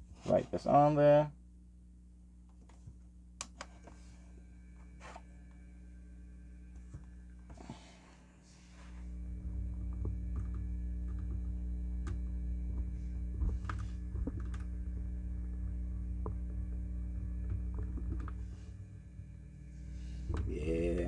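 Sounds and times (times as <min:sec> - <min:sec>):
small motor humming: 0:08.7 - 0:21.0.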